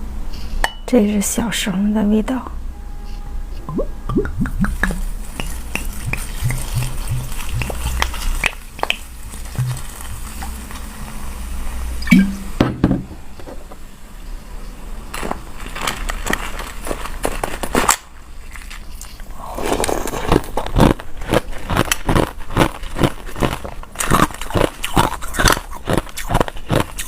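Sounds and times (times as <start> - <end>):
ice being crunched: 15.1 - 27.0.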